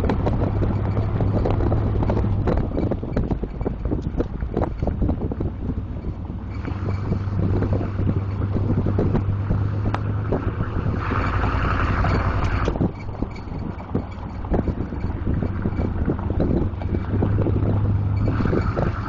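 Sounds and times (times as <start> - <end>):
truck engine humming: 0.0 - 19.0
squeaky noise: 6.0 - 9.1, 10.4 - 16.2, 18.0 - 19.0.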